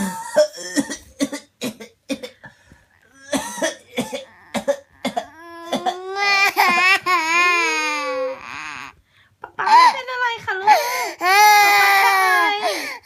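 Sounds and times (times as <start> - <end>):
baby crying: 4.0 - 9.0, 10.7 - 13.0.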